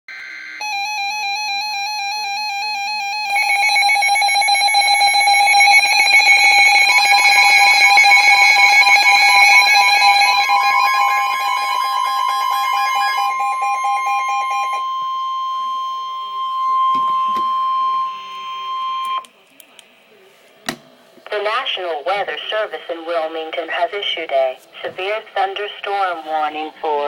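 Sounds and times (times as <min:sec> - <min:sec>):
steady single alarm tone: 0:00.1 - 0:19.3
pulsing buzzy beep tone: 0:00.2 - 0:19.3.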